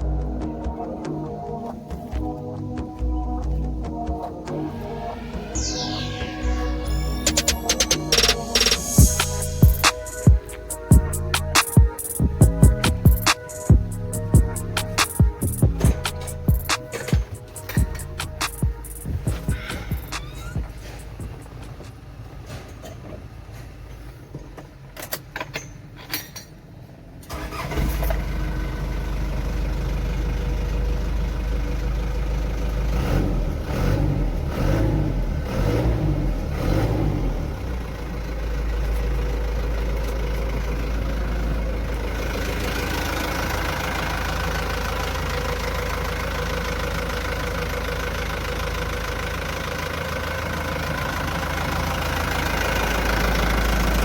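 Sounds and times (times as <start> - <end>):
diesel truck engine starting: 0.0 - 25.4, 26.8 - 54.0
clicks: 11.4 - 13.8.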